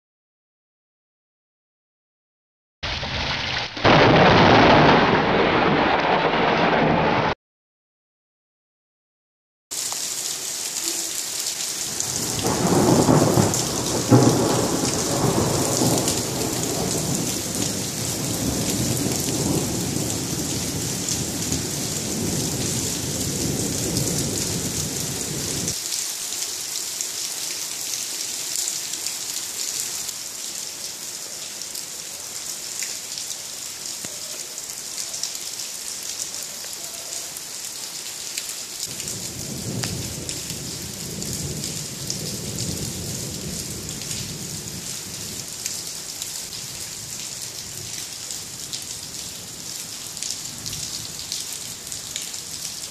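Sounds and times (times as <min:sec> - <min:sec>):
thunder rumbling: 0:02.9 - 0:07.4, 0:11.9 - 0:25.8, 0:38.9 - 0:45.4
heavy rain hissing: 0:09.7 - 0:52.9.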